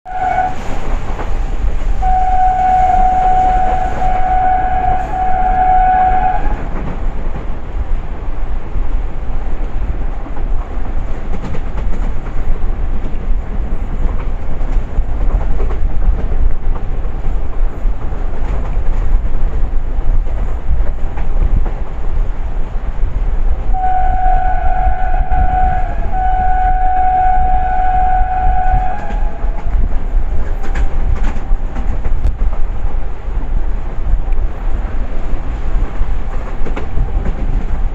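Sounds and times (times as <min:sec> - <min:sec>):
locomotive horn blasts: 0:00.1 - 0:00.6, 0:02.0 - 0:06.7, 0:23.7 - 0:29.8
train rumble and clickety-clack: 0:00.1 - 0:37.9.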